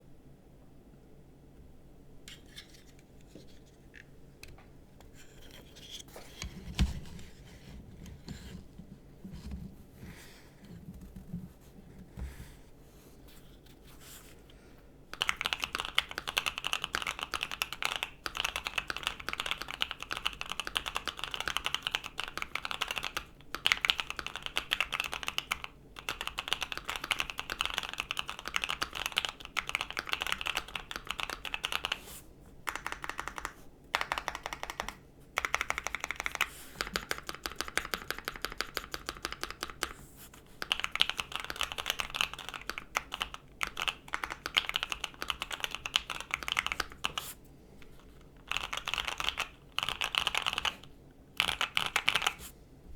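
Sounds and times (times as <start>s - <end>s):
fast mechanical keyboard typing: 15.1s - 32.0s, 32.6s - 40.0s, 40.6s - 47.2s, 48.4s - 52.4s.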